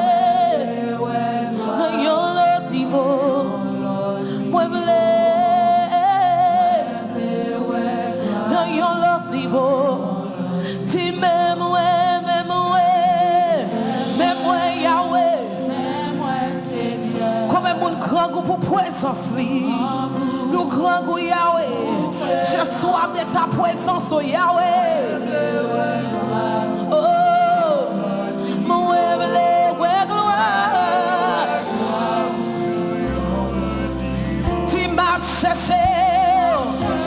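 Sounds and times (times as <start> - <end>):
gospel singers holding notes: 0.0 - 37.0
band accompaniment: 12.7 - 20.8, 21.7 - 37.0.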